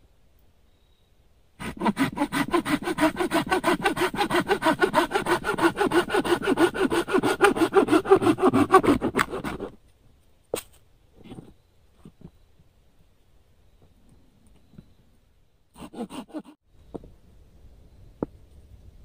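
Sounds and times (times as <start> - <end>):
hand saw cutting wood: 1.6 - 9.8, 15.8 - 16.6.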